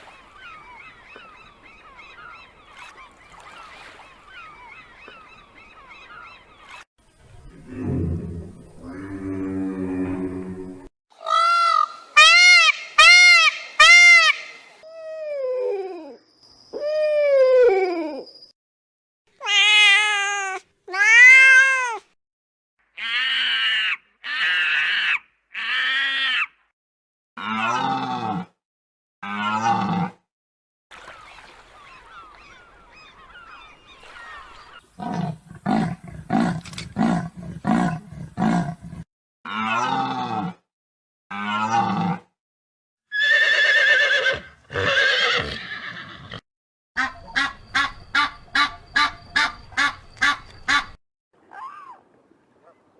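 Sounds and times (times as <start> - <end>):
cat meowing: 19.4 - 22.0.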